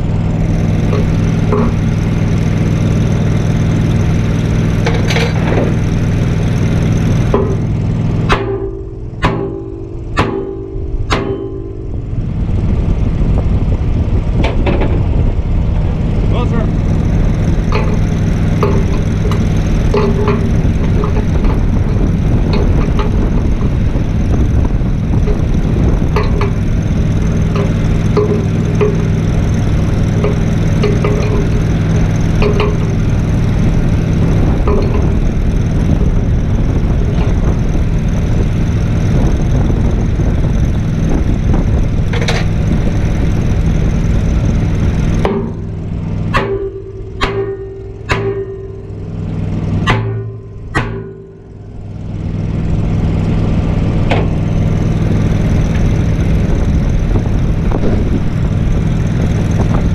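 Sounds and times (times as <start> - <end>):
engine running: 0.0 - 59.9.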